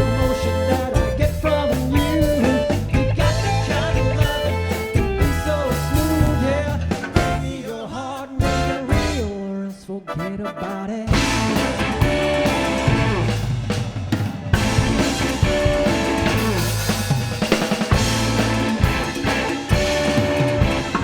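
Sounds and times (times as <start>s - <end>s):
bass drum and snare: 0.0s - 7.6s, 8.4s - 9.3s, 11.1s - 21.0s
live rock band playing: 0.0s - 21.0s.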